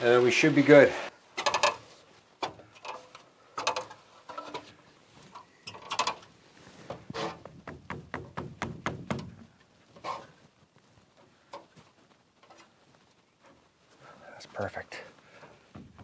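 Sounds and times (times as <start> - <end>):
knocks and clunks of building materials: 1.4 - 10.4, 15.4 - 16.0.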